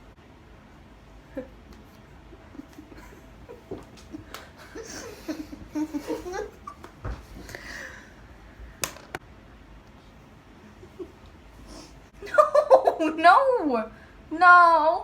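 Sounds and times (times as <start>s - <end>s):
giggling laughter: 2.3s - 6.9s, 12.2s - 13.2s.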